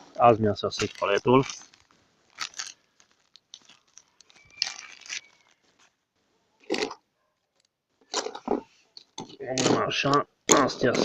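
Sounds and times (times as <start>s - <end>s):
packaging crinkling and tearing: 0.0s - 6.0s, 6.6s - 7.0s.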